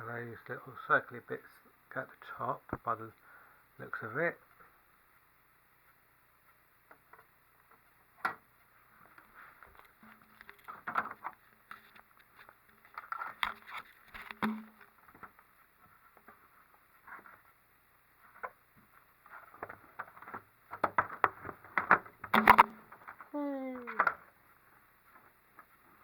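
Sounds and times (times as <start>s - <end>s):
plastic parts clicking and tapping: 19.6s - 23.2s.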